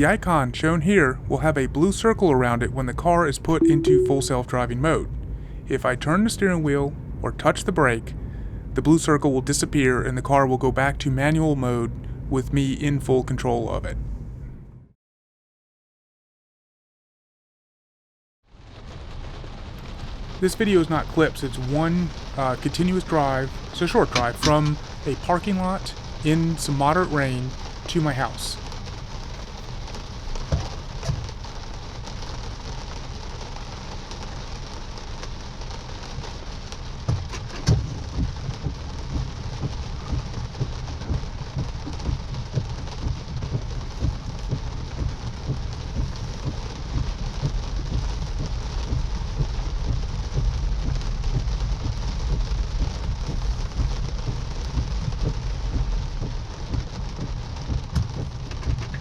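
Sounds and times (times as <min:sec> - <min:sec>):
rain on car roof: 0:00.0 - 0:05.8, 0:18.5 - 0:59.0
low road rumble: 0:18.6 - 0:59.0.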